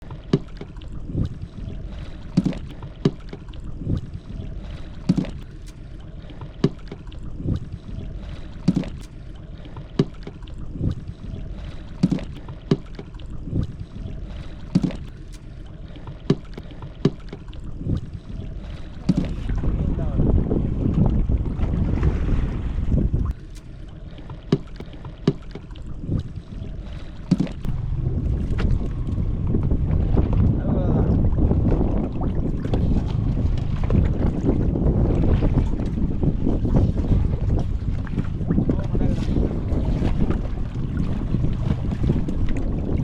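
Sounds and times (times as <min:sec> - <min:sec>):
boat engine low rumble: 0:00.0 - 0:43.0
wind noise: 0:17.7 - 0:23.4, 0:27.6 - 0:43.0.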